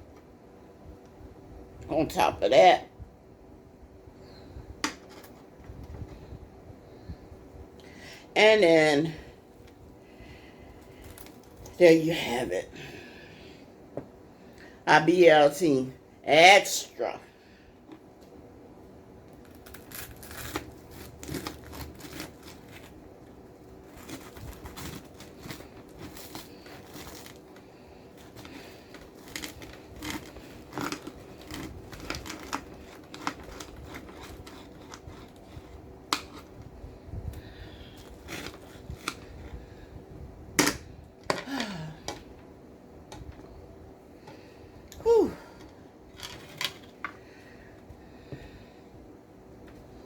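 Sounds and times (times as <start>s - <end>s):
faint steady hum: 0.0s - 50.0s
food handling clicks and crinkling: 10.8s - 11.8s, 19.3s - 36.7s, 37.3s - 39.6s, 45.6s - 47.3s.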